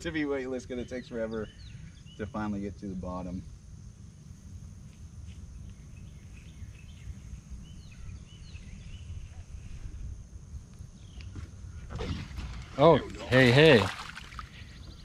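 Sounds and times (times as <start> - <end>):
faint bird chirps: 0.0 - 3.5, 5.5 - 10.1, 14.3 - 15.0.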